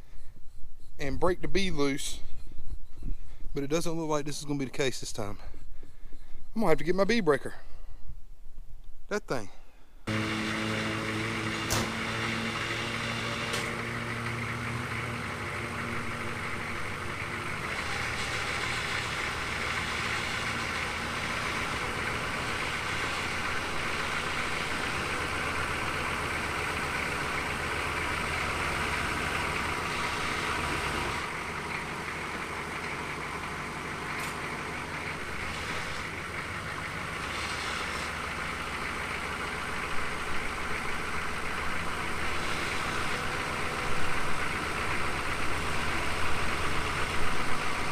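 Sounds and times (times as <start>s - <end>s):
engine running: 10.0s - 47.9s.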